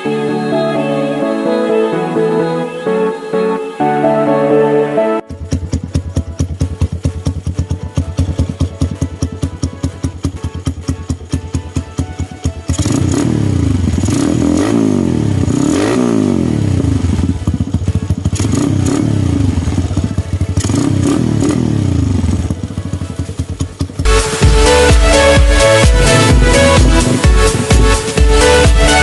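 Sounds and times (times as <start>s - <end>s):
electronic dance music: 0.0s - 12.6s, 24.0s - 29.0s
motorcycle engine revving: 5.2s - 29.0s.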